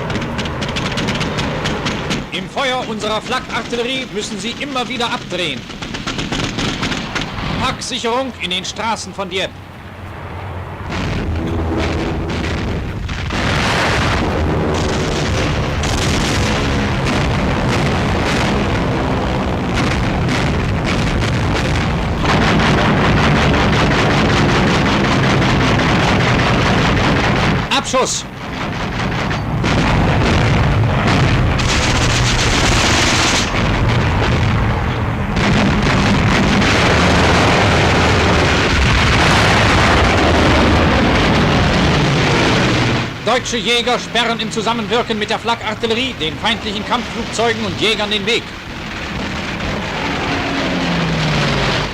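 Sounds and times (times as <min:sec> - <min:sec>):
gunfire: 0:00.0 - 0:08.2, 0:10.9 - 0:51.9
explosions: 0:00.0 - 0:09.6, 0:10.4 - 0:51.9.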